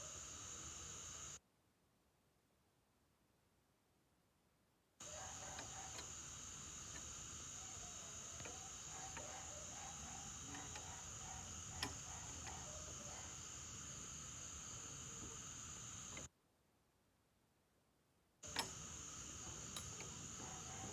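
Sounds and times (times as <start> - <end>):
crickets trilling: 0.0 - 1.4, 5.0 - 16.3, 18.4 - 20.9
light clicks: 5.0 - 16.3, 18.5 - 20.9.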